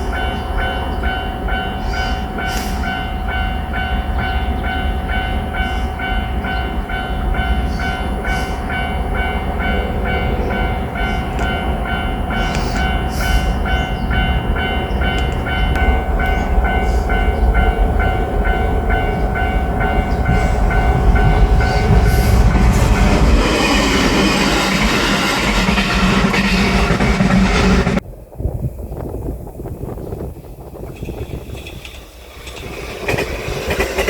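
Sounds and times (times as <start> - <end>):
level-crossing warning bell ringing: 0.0 - 28.0
diesel train rumbling on rails: 0.0 - 34.0.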